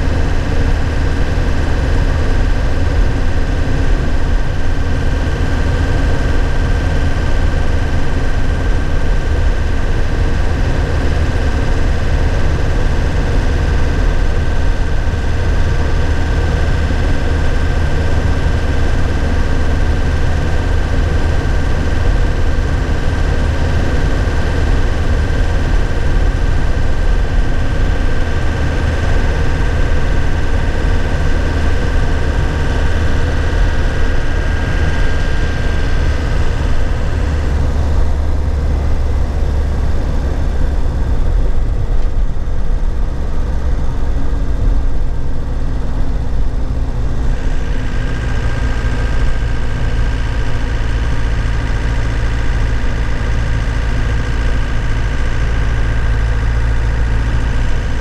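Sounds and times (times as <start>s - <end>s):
truck engine running: 0.0s - 58.0s.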